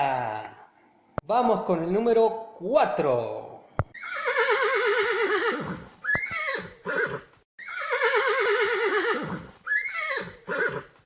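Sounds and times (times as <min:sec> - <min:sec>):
horse whinnying: 0:03.9 - 0:11.0.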